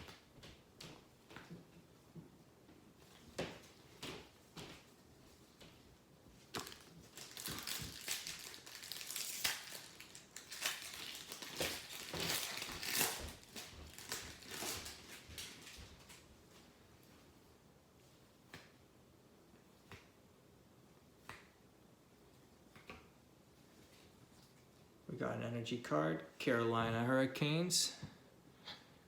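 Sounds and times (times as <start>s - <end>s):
packaging crinkling: 6.5s - 16.2s.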